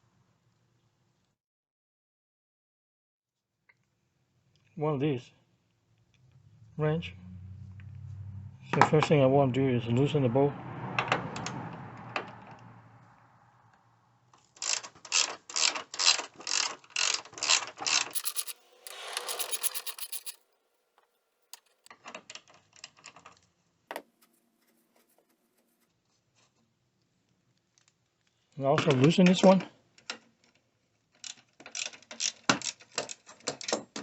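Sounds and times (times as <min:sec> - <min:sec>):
ratchet wrench clicking: 0:18.2 - 0:20.4, 0:21.6 - 0:21.9
scraping rasp: 0:18.2 - 0:20.4, 0:21.6 - 0:21.9.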